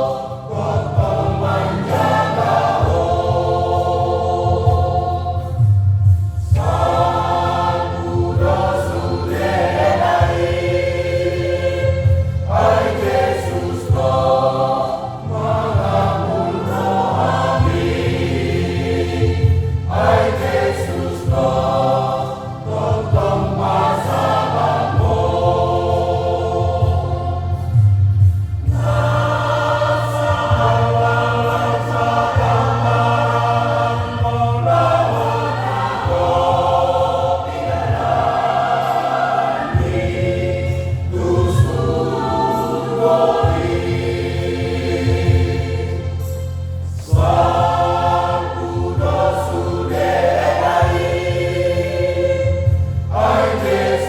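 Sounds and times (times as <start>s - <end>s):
sustained low bass notes: 0.0s - 53.9s
choir singing a hymn: 0.0s - 54.0s.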